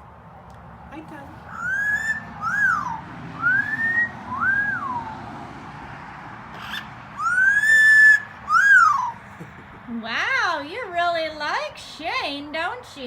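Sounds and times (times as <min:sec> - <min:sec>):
parrot whistling: 0:01.5 - 0:05.1, 0:06.6 - 0:09.2.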